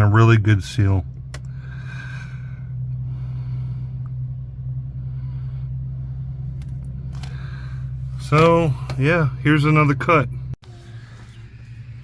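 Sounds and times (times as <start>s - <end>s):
low background hum: 0.0s - 12.0s.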